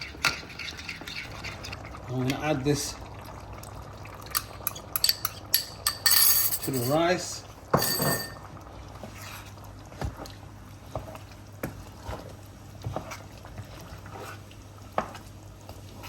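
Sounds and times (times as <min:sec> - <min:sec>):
pot simmering with bubbles popping: 0:01.6 - 0:05.6, 0:08.4 - 0:16.0.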